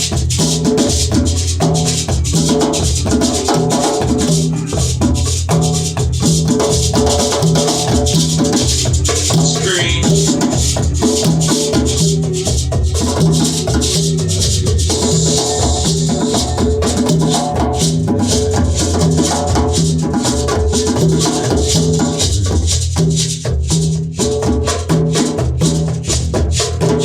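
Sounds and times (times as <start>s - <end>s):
hand percussion and drums: 0.0s - 27.0s
repeating bass line: 8.7s - 16.8s.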